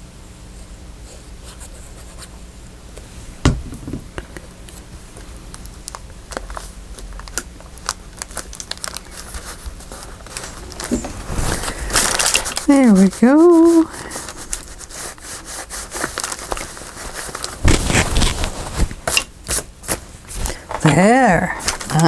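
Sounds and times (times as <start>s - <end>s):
paper crinkling: 4.7s - 22.0s.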